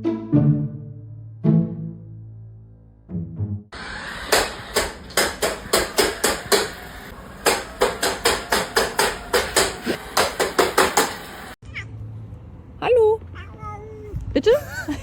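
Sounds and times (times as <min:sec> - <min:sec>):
rapid sharp knocks: 0:04.3 - 0:11.2.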